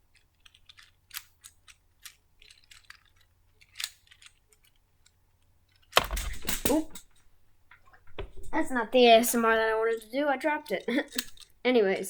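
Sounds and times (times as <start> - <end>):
plastic fidget cube clicking: 0.0 - 6.2, 9.9 - 11.6.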